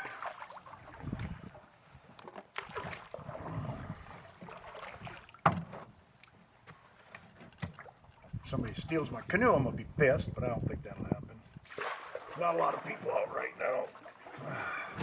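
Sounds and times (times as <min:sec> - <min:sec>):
scraping against canoe hull: 0:04.3 - 0:06.0
knocks on canoe: 0:05.4 - 0:05.9.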